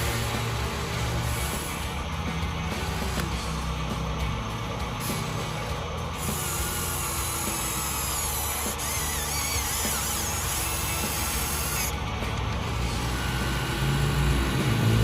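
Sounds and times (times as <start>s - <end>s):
small electric motors whining: 0.0s - 15.0s.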